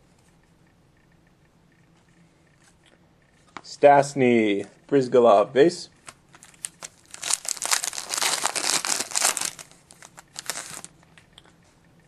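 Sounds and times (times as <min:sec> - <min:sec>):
plastic wrapper crinkling: 0:06.0 - 0:11.0.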